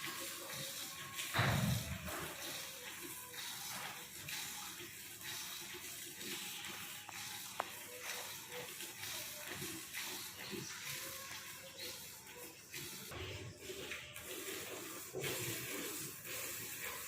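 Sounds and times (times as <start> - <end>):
milk squirting into bucket: 0.3 - 11.5.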